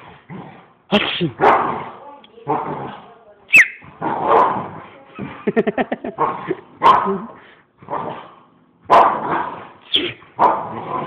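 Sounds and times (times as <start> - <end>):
dog barking: 1.4 - 1.8, 6.8 - 7.2, 8.9 - 9.4.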